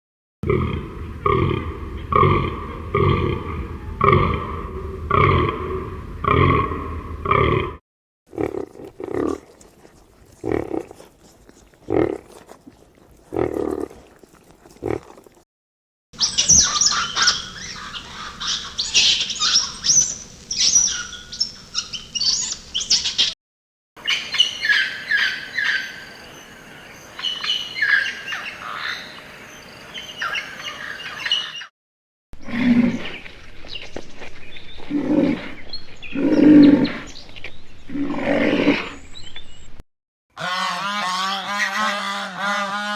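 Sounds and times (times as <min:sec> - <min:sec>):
birds chirping and twittering: 0:16.2 - 0:23.4, 0:24.0 - 0:31.7, 0:32.4 - 0:38.0, 0:38.8 - 0:39.8.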